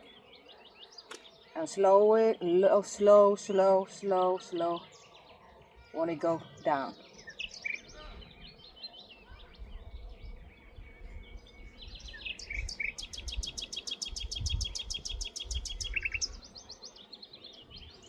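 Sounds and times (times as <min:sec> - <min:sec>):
wild birds chirping and singing: 0:00.0 - 0:18.0
wind rumbling on microphone: 0:07.8 - 0:16.5.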